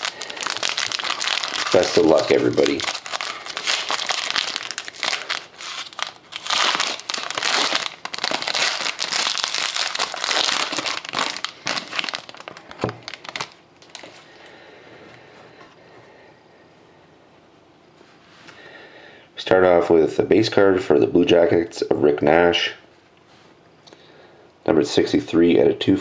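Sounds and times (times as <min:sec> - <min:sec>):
wrapping tearing and crinkling: 0:00.0 - 0:14.5.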